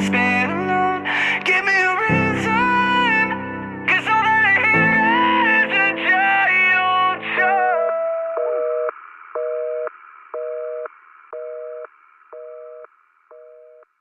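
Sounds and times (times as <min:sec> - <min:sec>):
person singing: 0:00.0 - 0:08.5
telephone busy signal beeps: 0:08.4 - 0:13.8.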